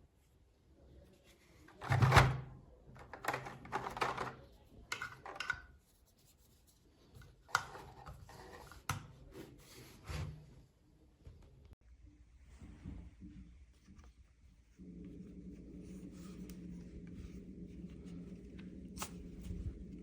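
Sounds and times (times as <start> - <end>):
object handling scraping and clicks: 7.2 - 10.2.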